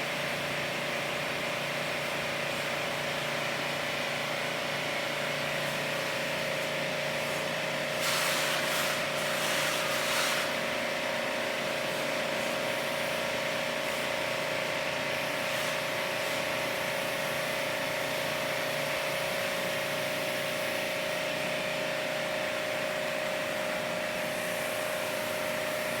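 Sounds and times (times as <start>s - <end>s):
pressure washer motor running: 0.0s - 26.0s
water spraying: 7.2s - 10.9s.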